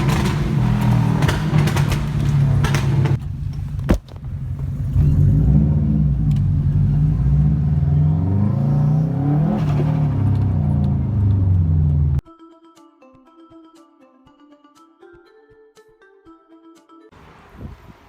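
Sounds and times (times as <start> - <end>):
car engine revving: 0.0 - 12.2.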